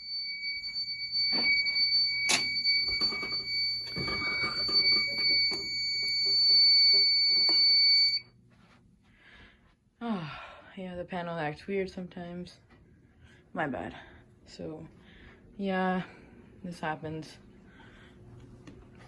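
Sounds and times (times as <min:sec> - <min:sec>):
fire alarm tone: 0:00.0 - 0:08.3.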